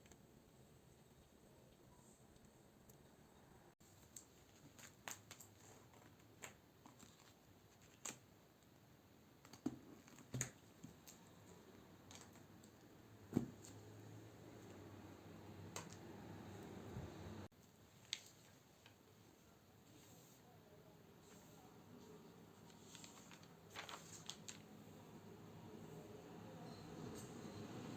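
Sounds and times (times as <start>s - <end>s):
faint low hum: 8.6s - 27.9s.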